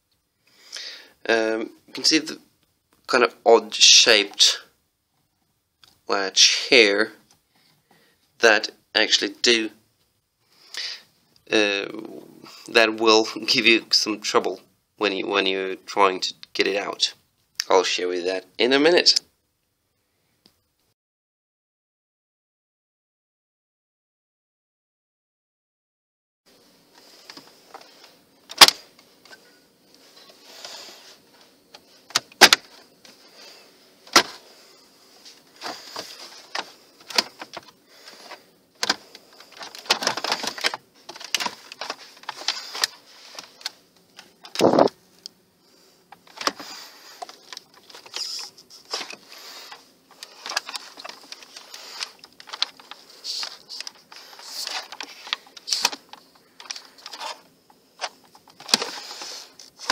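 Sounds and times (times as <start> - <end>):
rustling: 26.5 - 59.9.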